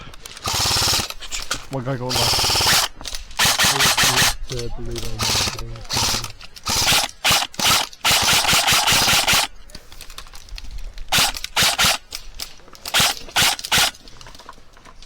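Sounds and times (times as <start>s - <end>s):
airsoft gun firing bursts: 0.4s - 1.4s, 2.1s - 4.4s, 5.2s - 9.5s, 11.1s - 12.2s, 12.9s - 14.0s.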